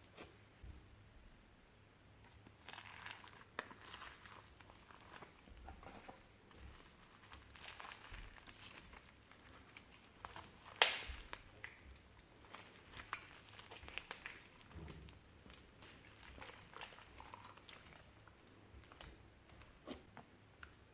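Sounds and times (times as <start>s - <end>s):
slime squished by hand: 2.3s - 20.8s
sharp pop: 10.8s - 11.2s.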